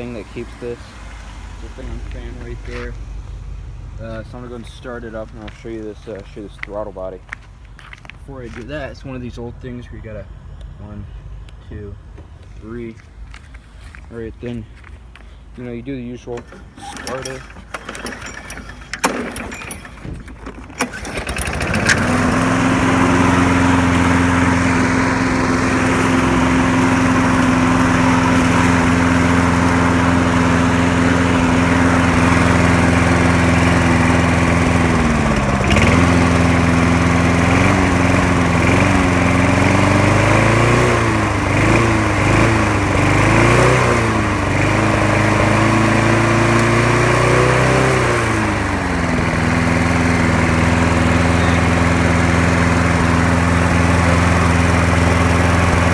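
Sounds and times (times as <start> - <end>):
lawn mower pull-start: 0.0 - 3.3, 15.6 - 55.9
lawn mower engine running: 0.0 - 55.9.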